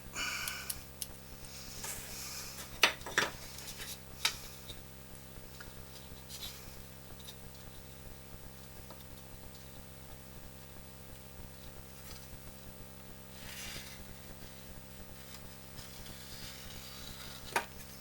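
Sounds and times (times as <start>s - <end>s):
scratching and rubbing on wood: 13.3s - 18.0s.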